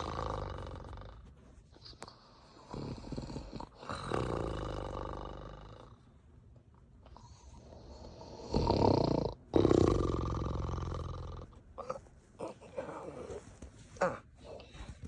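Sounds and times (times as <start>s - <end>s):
woman snoring: 2.7s - 5.8s, 8.1s - 11.4s.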